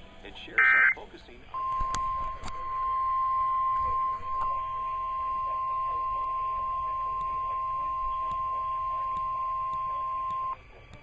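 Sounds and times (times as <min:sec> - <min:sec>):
faint radio talk: 0:00.2 - 0:01.6, 0:03.7 - 0:10.0
steady high alarm beep: 0:00.6 - 0:10.6.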